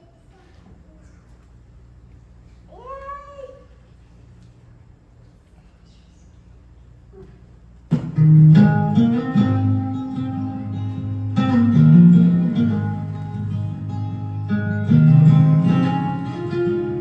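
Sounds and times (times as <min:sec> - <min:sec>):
acoustic guitar chords: 0:07.9 - 0:17.0.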